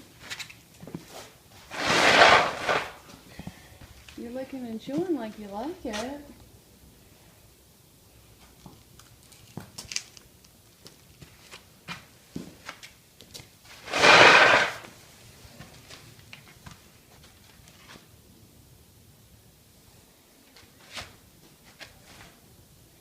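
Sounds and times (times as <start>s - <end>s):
faint clicks and rustles: 8.3s - 13.8s.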